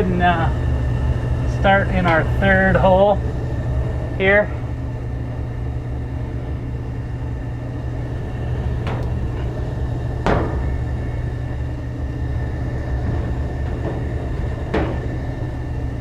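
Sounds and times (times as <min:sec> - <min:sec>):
gas furnace rumbling: 0:00.0 - 0:16.0
sharp knocks: 0:10.2 - 0:10.9, 0:13.0 - 0:15.3.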